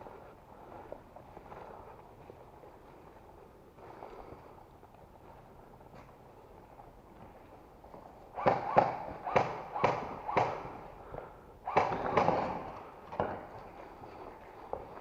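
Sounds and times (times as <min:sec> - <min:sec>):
airsoft pistol shots: 0:08.4 - 0:10.8, 0:11.6 - 0:12.8.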